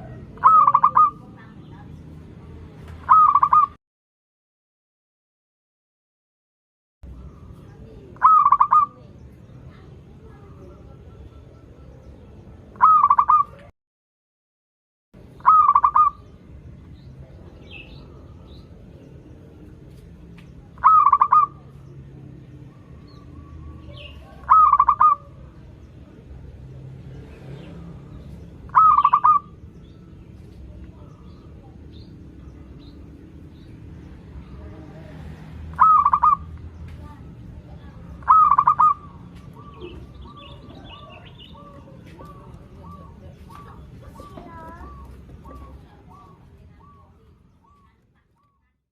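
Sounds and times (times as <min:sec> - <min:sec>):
dove cooing: 0:00.0 - 0:01.5, 0:03.0 - 0:03.8, 0:07.4 - 0:09.2, 0:10.4 - 0:13.7, 0:15.4 - 0:16.3, 0:20.8 - 0:21.7, 0:22.7 - 0:25.7, 0:28.7 - 0:29.7, 0:35.7 - 0:36.6, 0:37.8 - 0:47.8.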